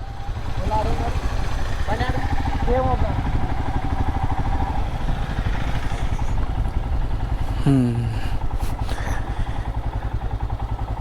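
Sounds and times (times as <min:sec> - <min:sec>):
road noise: 0:00.0 - 0:11.0
vehicle engine rumbling: 0:00.0 - 0:11.0.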